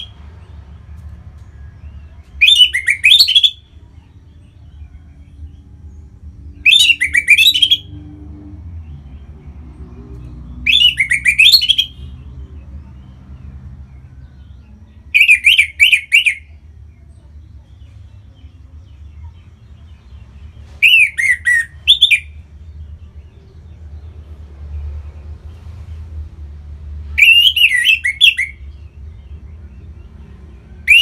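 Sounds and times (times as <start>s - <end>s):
thrush singing: 1.8s - 16.9s.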